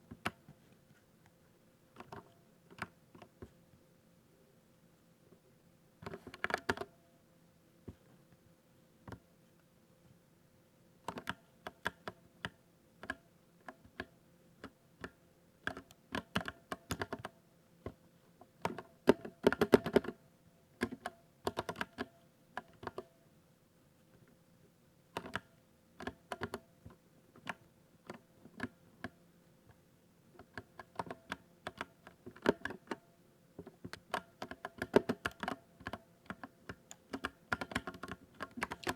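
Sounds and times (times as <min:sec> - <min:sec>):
keyboard typing: 0:33.9 - 0:38.9.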